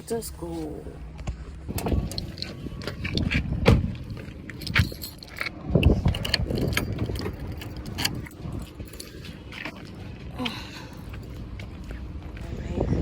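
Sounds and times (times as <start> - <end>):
knocks and rattling of handled objects: 1.2 - 10.0.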